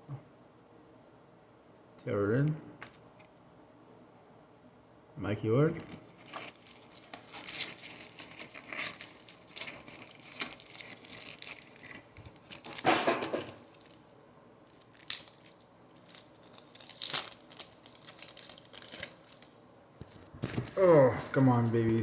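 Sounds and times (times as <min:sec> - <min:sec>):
cards handled: 0:05.8 - 0:14.0, 0:14.7 - 0:20.8
wrapper crinkling and tearing: 0:06.0 - 0:14.1, 0:14.7 - 0:21.0.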